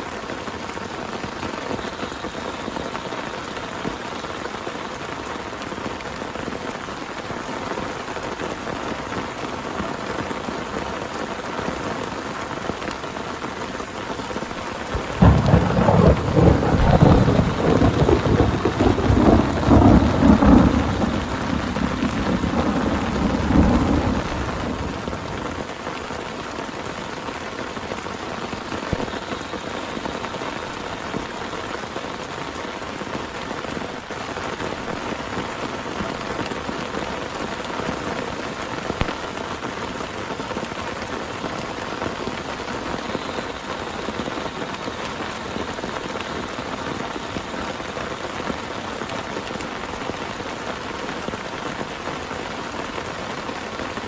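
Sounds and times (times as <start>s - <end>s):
heavy rain: 0.0s - 54.0s
thunder rumbling: 14.5s - 31.3s.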